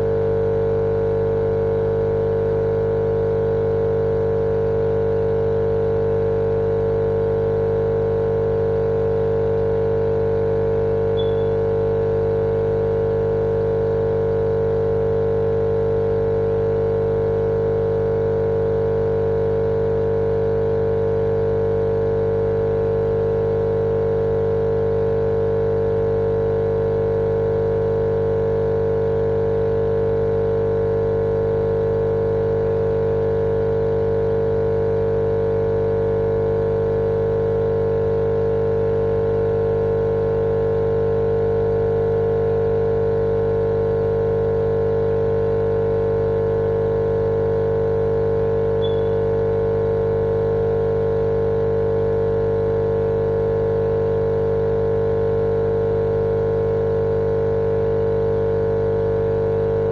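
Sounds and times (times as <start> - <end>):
machine-like hum with drone: 11.0 - 11.8, 48.7 - 49.5.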